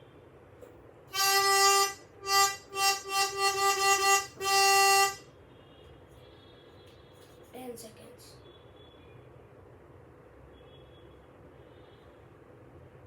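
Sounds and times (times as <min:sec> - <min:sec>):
car horn honking: 0:01.2 - 0:05.2.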